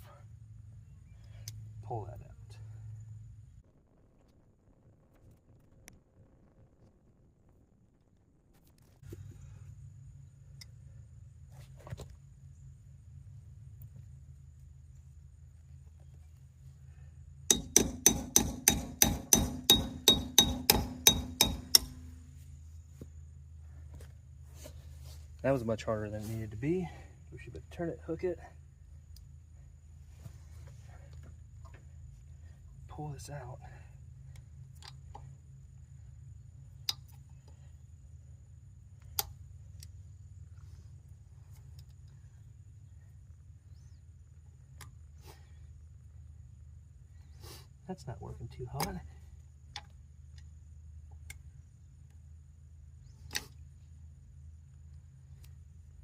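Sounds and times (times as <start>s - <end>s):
steady low hum: 0.0s - 56.0s
hammer striking metal: 17.5s - 22.2s
valve tool clicking against wheel: 17.5s - 22.2s.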